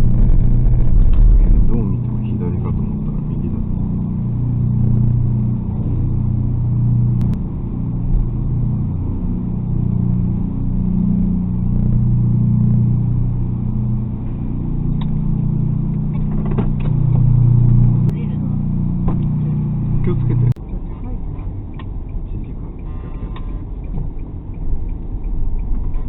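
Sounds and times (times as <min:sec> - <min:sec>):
car interior engine drone: 0:00.0 - 0:26.0.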